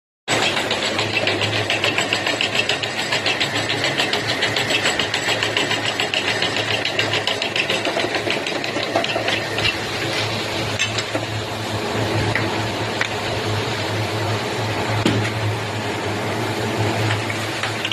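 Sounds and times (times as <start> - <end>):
fast even clicking clatter: 0.3 - 9.8
machinery humming: 0.3 - 17.9.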